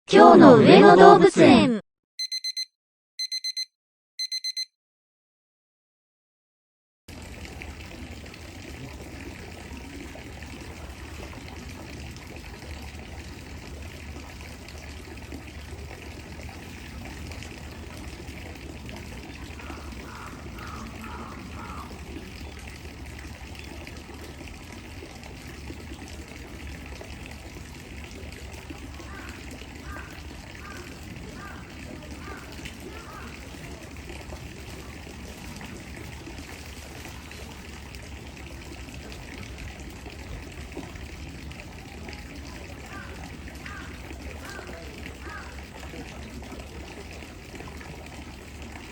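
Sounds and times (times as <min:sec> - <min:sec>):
short electronic beeps: 0:02.2 - 0:04.7
water trickling: 0:07.1 - 0:48.9.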